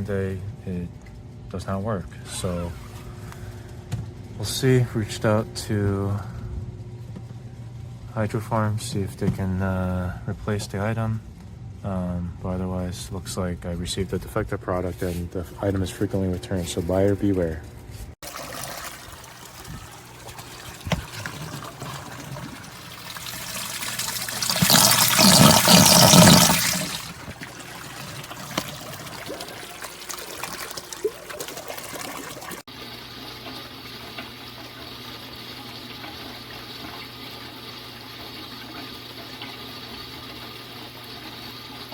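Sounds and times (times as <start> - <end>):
water rushing and splashing: 18.2 - 32.6
faint water trickle: 18.2 - 41.9
water pump humming: 18.2 - 41.9.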